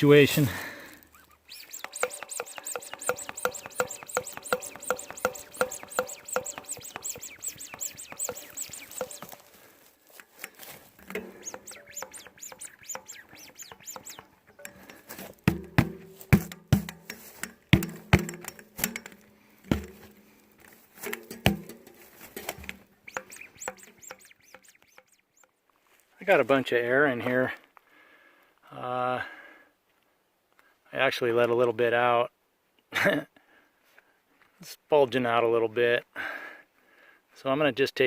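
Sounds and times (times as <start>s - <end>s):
bicycle hand pump squeaky strokes: 1.0s - 15.6s, 21.0s - 25.5s.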